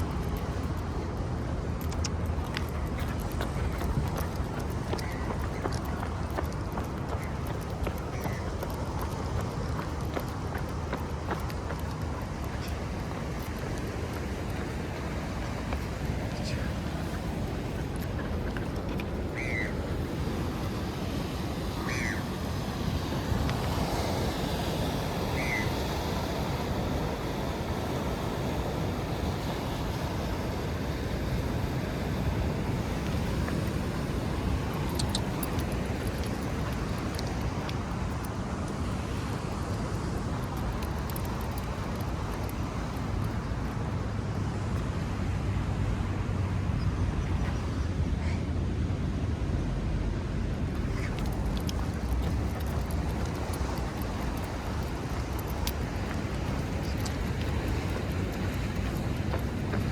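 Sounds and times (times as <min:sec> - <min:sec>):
faint clicks: 0:00.0 - 0:19.2, 0:34.7 - 0:44.9, 0:50.8 - 0:59.9
road traffic rumble: 0:00.0 - 0:59.9.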